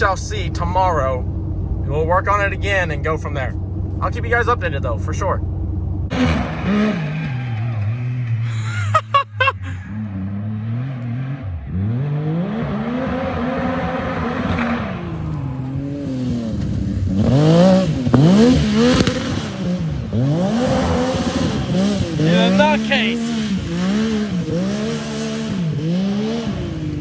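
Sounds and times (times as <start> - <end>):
vehicle engine revving: 0.0 - 27.0
sharp engine pops: 18.9 - 19.5.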